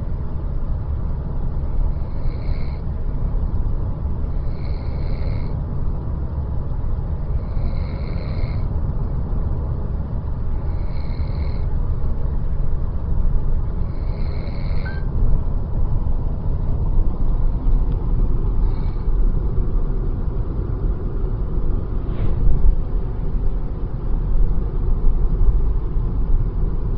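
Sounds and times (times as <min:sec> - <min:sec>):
person snoring: 0:02.0 - 0:02.8, 0:04.4 - 0:05.5, 0:07.3 - 0:08.7, 0:10.6 - 0:11.7, 0:13.8 - 0:14.9.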